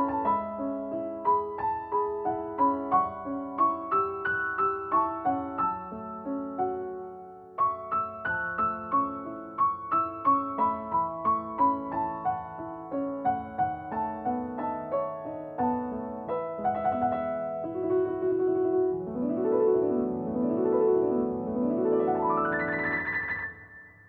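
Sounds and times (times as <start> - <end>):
gentle piano melody: 0.0 - 24.0.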